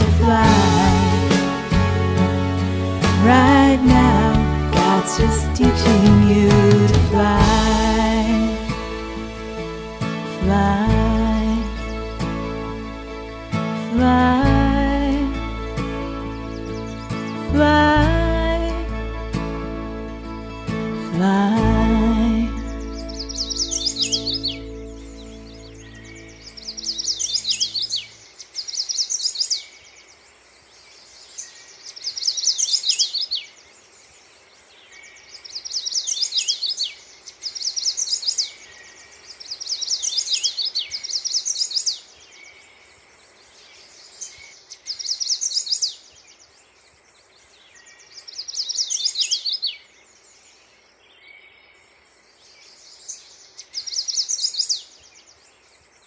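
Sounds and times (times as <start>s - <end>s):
music: 0.0s - 27.2s
background hiss: 0.0s - 56.0s
songbird chirping: 0.0s - 56.0s.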